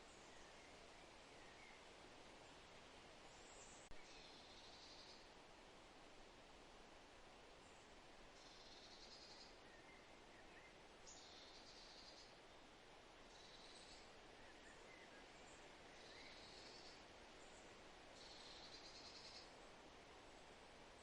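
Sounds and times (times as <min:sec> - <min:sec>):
faint bird chirps: 0:03.3 - 0:05.3, 0:07.6 - 0:12.6, 0:13.3 - 0:17.6, 0:18.2 - 0:19.6.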